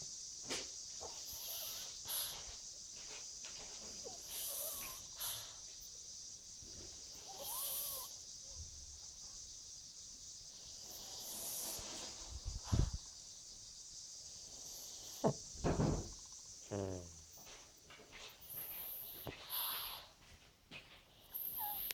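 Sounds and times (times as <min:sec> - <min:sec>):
dog snoring with whistle: 0:01.2 - 0:02.4, 0:04.1 - 0:05.6, 0:07.1 - 0:08.1, 0:10.8 - 0:12.0, 0:16.7 - 0:17.2, 0:21.2 - 0:21.9.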